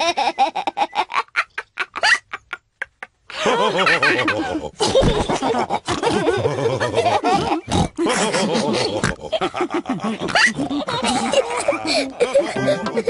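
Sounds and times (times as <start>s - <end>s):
cartoon pigs laughing and snorting: 0.0s - 13.0s.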